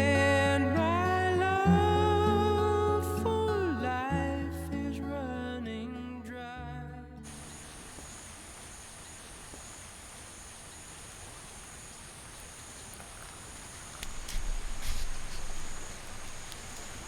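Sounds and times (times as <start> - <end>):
insects chirring: 7.2 - 17.0
mountain stream rushing: 7.3 - 17.0.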